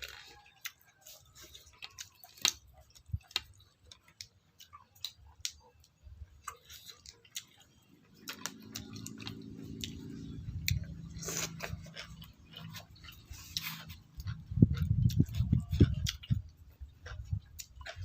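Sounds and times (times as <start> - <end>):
chewing and mouth clicks: 0.0 - 18.0
low steady hum: 6.1 - 18.0.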